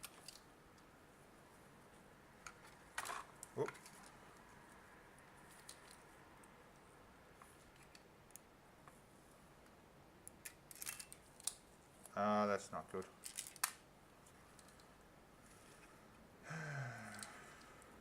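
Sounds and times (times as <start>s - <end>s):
clicks of small parts handled: 0.0s - 0.5s, 5.5s - 6.0s, 7.6s - 8.4s, 10.3s - 12.1s, 13.2s - 13.8s, 14.5s - 14.9s.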